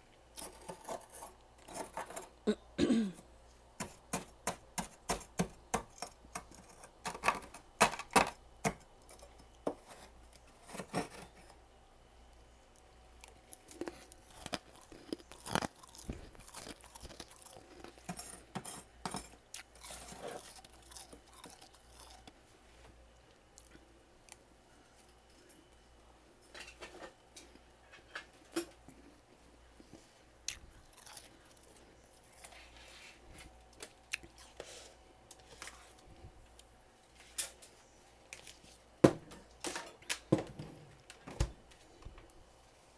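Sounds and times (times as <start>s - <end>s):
frost crunching in the mouth: 13.3s - 18.2s.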